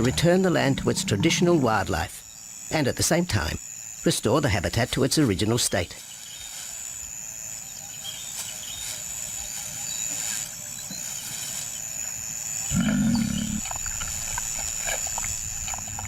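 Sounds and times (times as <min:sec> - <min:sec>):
lion roaring: 0:00.0 - 0:01.7, 0:12.7 - 0:13.7
insects droning: 0:00.0 - 0:16.0.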